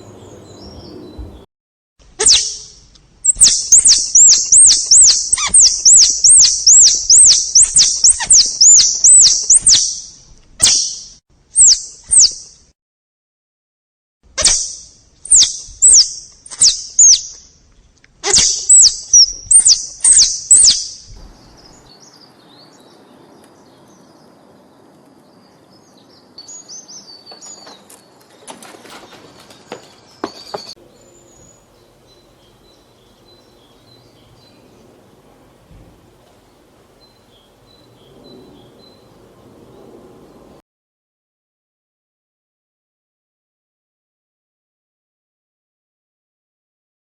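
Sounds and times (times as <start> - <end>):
squirrel chirping: 2.2 - 12.6, 14.4 - 17.5, 18.2 - 21.8.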